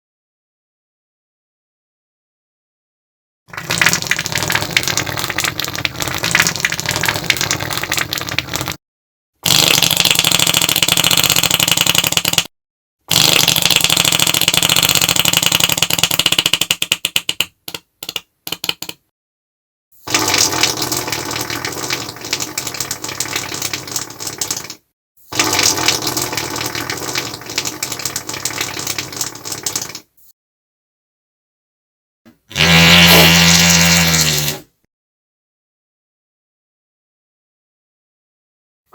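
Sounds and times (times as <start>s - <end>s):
long fart sounds: 32.4s - 34.8s.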